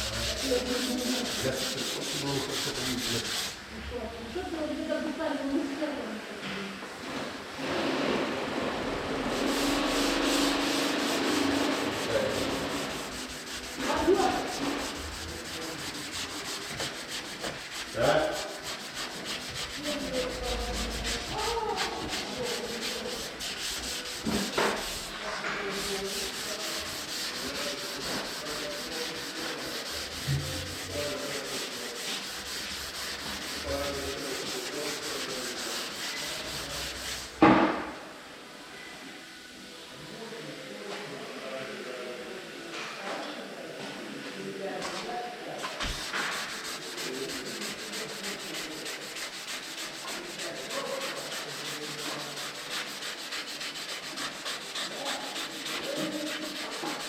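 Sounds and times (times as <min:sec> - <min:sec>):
sandpaper rasping on filler: 0:00.0 - 0:03.6, 0:09.1 - 0:37.5, 0:45.6 - 0:57.0.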